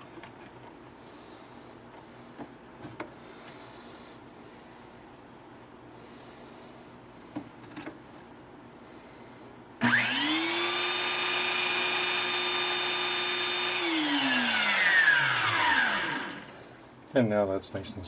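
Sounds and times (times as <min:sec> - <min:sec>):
belt sander motor whine: 0:09.8 - 0:16.6
sander spinning down: 0:09.8 - 0:16.6.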